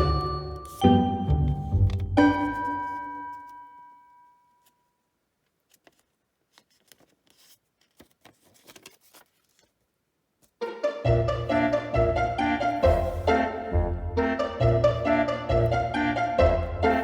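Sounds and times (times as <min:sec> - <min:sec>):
chime ringing: 0:00.0 - 0:04.4
paper rustling and folding: 0:01.5 - 0:03.0, 0:05.5 - 0:10.6, 0:12.7 - 0:13.3.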